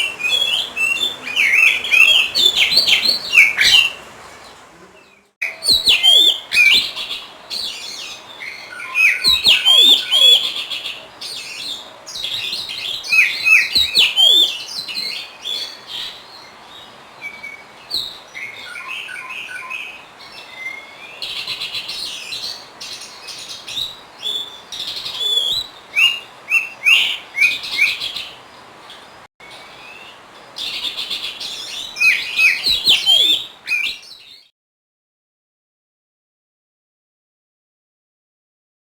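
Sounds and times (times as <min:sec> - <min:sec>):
bird singing whistles and chatter: 0:00.0 - 0:04.0, 0:05.1 - 0:16.2, 0:17.2 - 0:28.2, 0:30.6 - 0:34.5.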